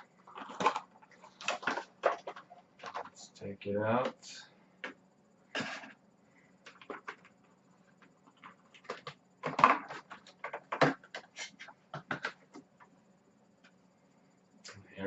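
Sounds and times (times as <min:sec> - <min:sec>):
clicks and crinkles: 0:00.0 - 0:03.2, 0:06.6 - 0:12.9.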